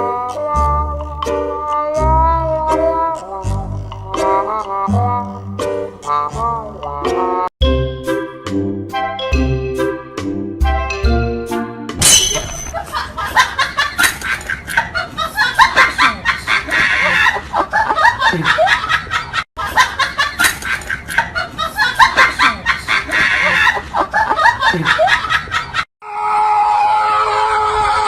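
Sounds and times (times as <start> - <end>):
many voices laughing and snickering: 12.8 - 25.9.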